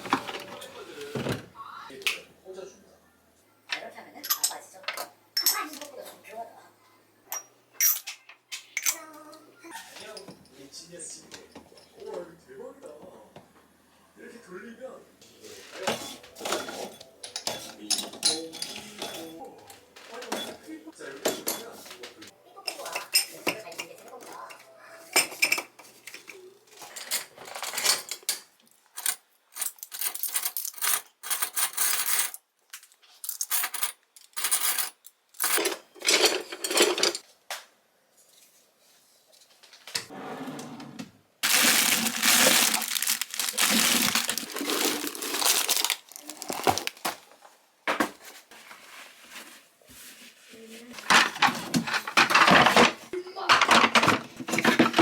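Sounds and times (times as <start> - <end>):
dishes clinking and knocking: 15.8 - 22.0, 22.6 - 26.3, 35.5 - 37.2, 51.0 - 55.0.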